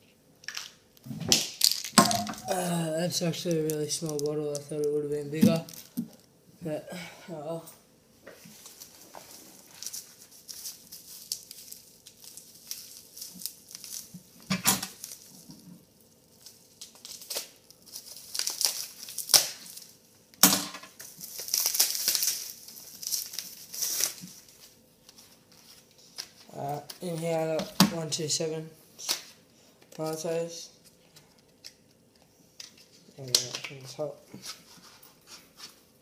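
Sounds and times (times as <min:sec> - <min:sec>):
packaging crinkling and tearing: 0:00.4 - 0:06.3, 0:08.6 - 0:20.0, 0:20.9 - 0:27.5.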